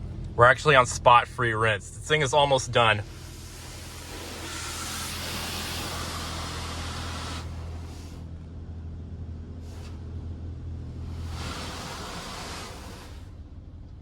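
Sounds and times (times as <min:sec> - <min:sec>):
low hum: 0:00.0 - 0:14.0
water spraying on car: 0:02.8 - 0:08.2, 0:10.9 - 0:13.4.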